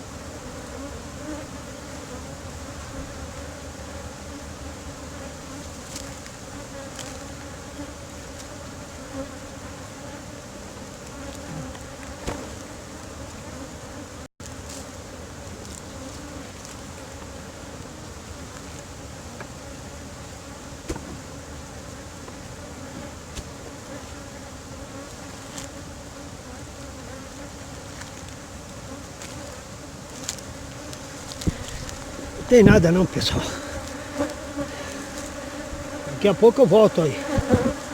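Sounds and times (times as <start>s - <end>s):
bees buzzing: 31.0s - 37.9s.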